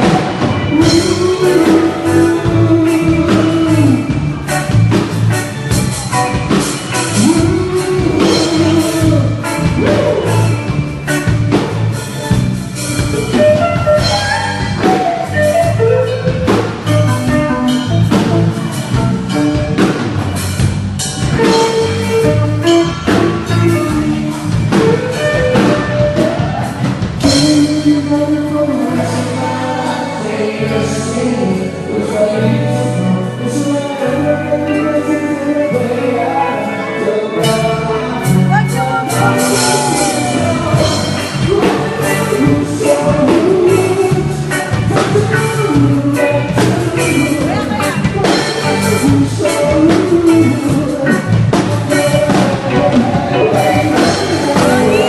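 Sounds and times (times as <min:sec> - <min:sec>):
person singing long notes: 0:00.0 - 0:04.7, 0:07.1 - 0:10.8, 0:21.4 - 0:55.0
drum kit beat: 0:00.0 - 0:31.4, 0:37.5 - 0:55.0
band playing: 0:00.0 - 0:55.0
guitar: 0:00.0 - 0:55.0.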